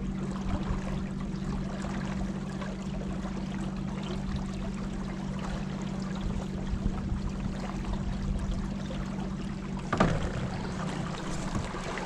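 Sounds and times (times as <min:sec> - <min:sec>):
low motor hum: 0:00.0 - 0:12.0
water rushing past boat: 0:00.0 - 0:12.0
sharp thump: 0:09.9 - 0:10.6.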